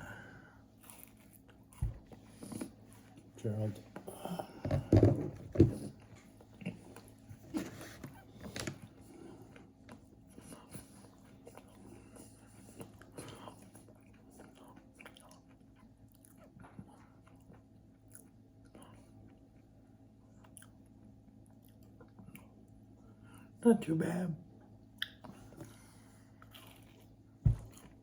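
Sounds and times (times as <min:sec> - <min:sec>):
steady low hum: 0:00.0 - 0:28.0
person chewing and crunching: 0:00.7 - 0:02.7, 0:09.3 - 0:22.8, 0:25.0 - 0:28.0.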